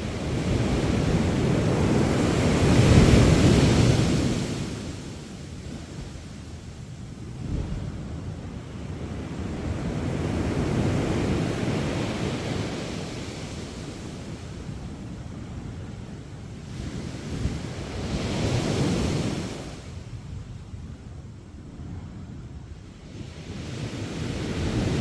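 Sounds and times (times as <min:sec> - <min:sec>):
wind buffeting microphone: 0:00.0 - 0:13.2.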